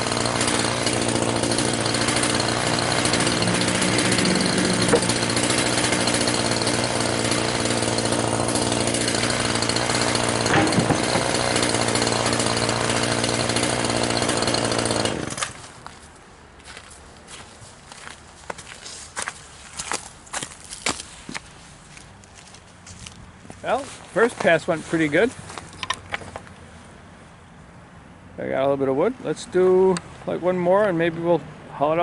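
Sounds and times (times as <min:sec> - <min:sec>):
power saw cutting wood: 0:00.0 - 0:15.7
brief knocks: 0:10.5 - 0:11.3.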